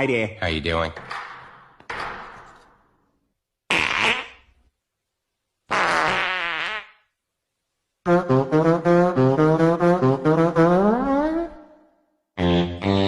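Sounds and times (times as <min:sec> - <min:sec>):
fart sound effects: 0:03.7 - 0:04.6, 0:05.7 - 0:07.1.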